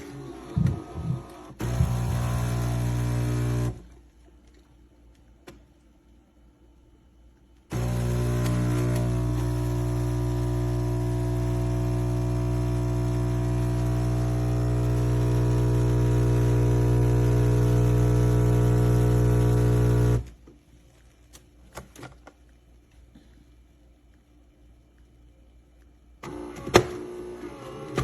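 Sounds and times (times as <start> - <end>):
espresso machine pump humming: 1.6 - 3.8, 7.7 - 20.3.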